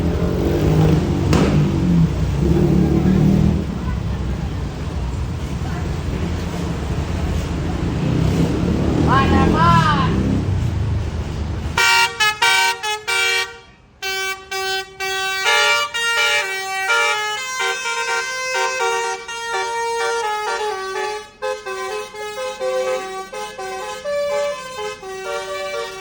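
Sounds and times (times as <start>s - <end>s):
low engine rumble: 0.0s - 12.2s
musical air horn melody: 11.8s - 26.0s.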